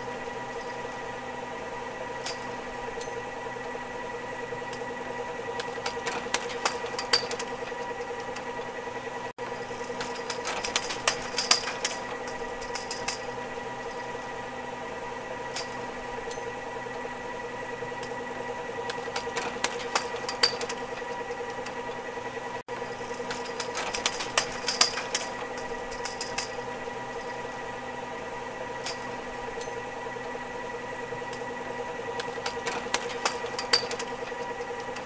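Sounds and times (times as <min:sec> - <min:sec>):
ski lift motor hum: 0:00.0 - 0:35.0
lift clicks and rattles: 0:04.7 - 0:08.7, 0:09.6 - 0:14.0, 0:18.8 - 0:22.1, 0:22.8 - 0:27.4, 0:31.3 - 0:35.0.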